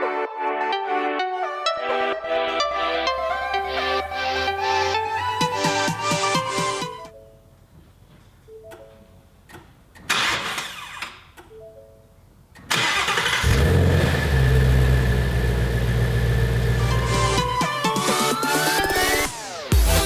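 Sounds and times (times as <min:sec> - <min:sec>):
car engine starting and idling: 0:02.8 - 0:07.0, 0:09.4 - 0:11.5, 0:12.6 - 0:17.8.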